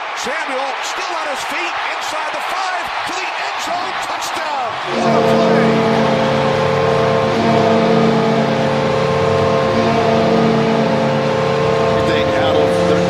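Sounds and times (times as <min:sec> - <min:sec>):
goal horn blast: 0:04.8 - 0:13.0.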